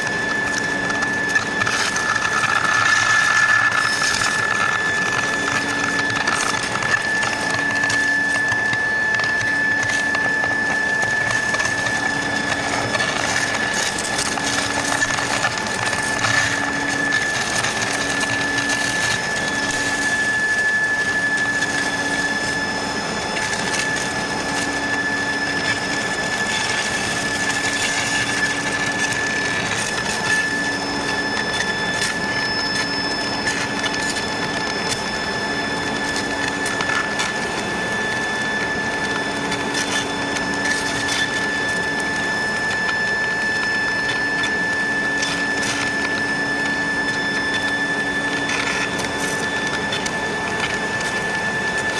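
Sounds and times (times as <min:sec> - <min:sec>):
crackling of sparking melt: 0:00.0 - 0:51.9
induction furnace high-pitched whine: 0:00.0 - 0:51.9.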